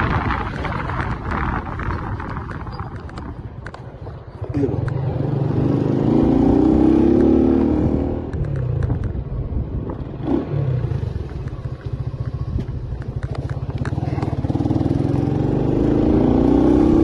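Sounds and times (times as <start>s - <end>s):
vehicle engine running: 10.8s - 15.3s.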